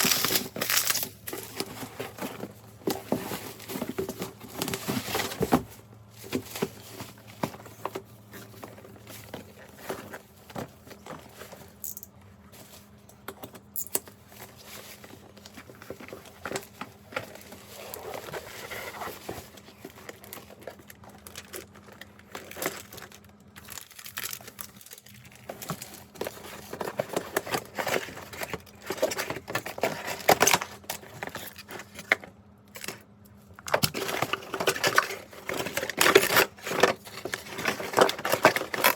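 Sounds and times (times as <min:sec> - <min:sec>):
plastic wrapping crinkling: 0:00.0 - 0:05.4, 0:14.3 - 0:32.0, 0:33.9 - 0:38.9.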